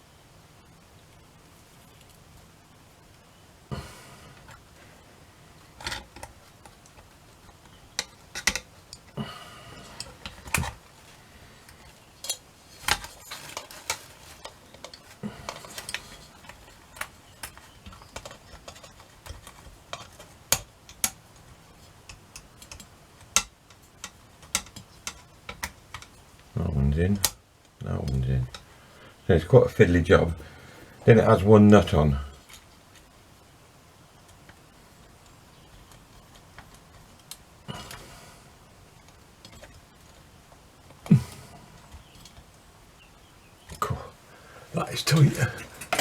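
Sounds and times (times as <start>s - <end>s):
metal clock parts clicking: 8.0s - 9.1s, 22.1s - 26.1s.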